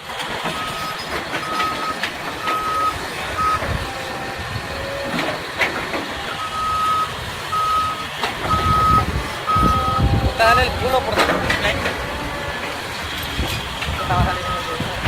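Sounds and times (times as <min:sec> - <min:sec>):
diesel machinery rumble: 0:00.0 - 0:15.0
backup alarm beeping: 0:00.6 - 0:05.5, 0:06.2 - 0:10.8, 0:14.0 - 0:15.0.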